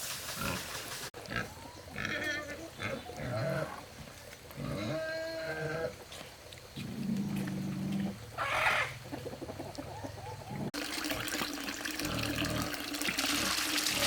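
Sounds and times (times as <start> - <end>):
farm animals calling: 0.4 - 10.7.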